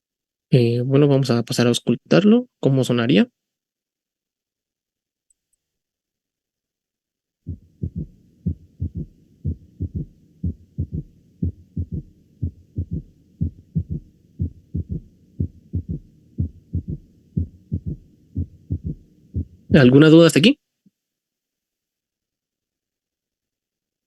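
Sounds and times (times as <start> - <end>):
galloping heartbeat thuds: 7.5 - 19.8.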